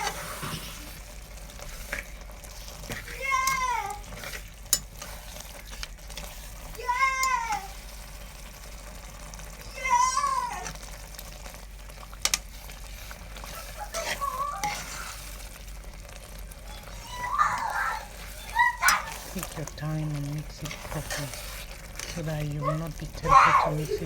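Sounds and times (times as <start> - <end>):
stirring soup pot: 0.0 - 24.0
cat meowing: 16.7 - 19.3, 22.5 - 23.9.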